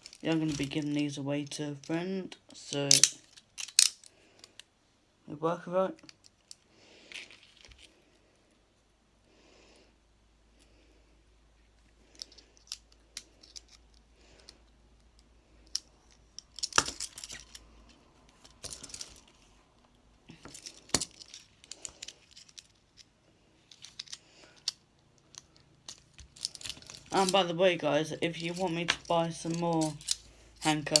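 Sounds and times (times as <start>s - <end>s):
metal handcuffs clicking and rattling: 0.0s - 4.7s, 12.0s - 19.4s, 20.3s - 27.6s, 28.2s - 31.0s.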